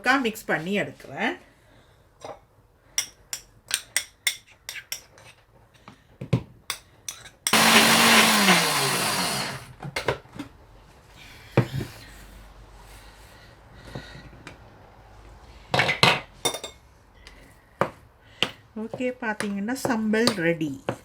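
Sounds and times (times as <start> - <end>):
electric mixer grinder whine: 7.5 - 9.7.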